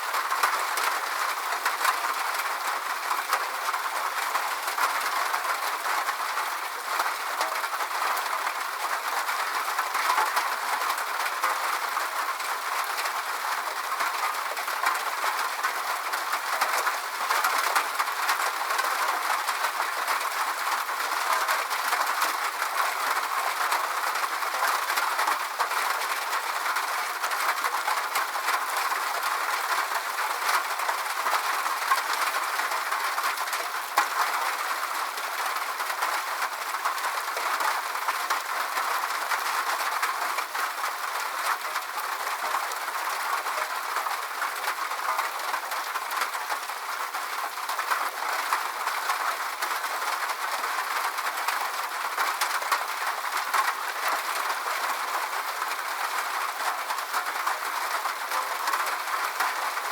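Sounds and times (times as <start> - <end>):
steady rain hiss: 0.0 - 59.9.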